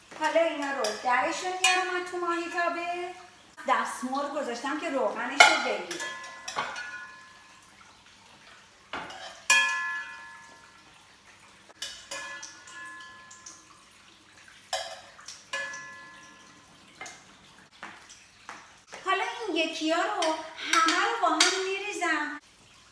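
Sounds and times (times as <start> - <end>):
metal utensil clinking on pan: 0.2 - 2.8, 5.0 - 7.7, 8.9 - 10.9, 11.8 - 13.9, 14.7 - 17.3, 20.2 - 21.8.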